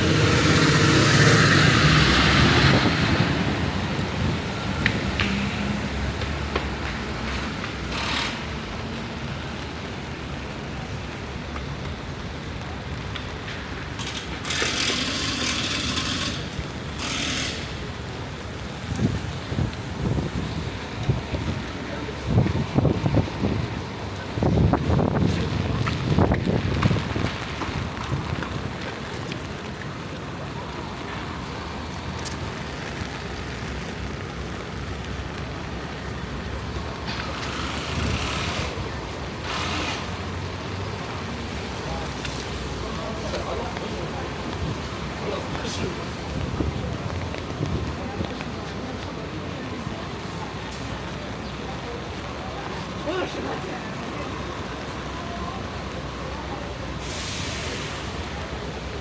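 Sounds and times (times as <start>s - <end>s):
rain hiss: 0.0s - 59.0s
traffic on wet roads: 0.0s - 59.0s
loud hiss: 57.0s - 58.9s.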